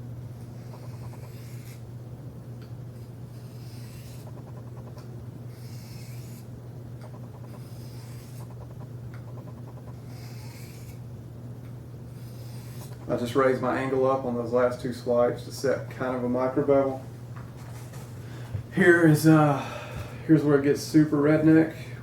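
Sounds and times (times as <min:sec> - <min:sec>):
low hum: 0:00.0 - 0:15.3.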